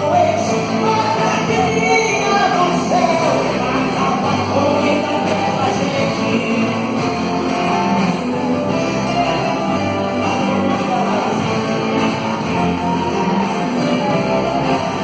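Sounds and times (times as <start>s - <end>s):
bass line: 0.0s - 15.0s
strummed guitar chords: 0.0s - 15.0s.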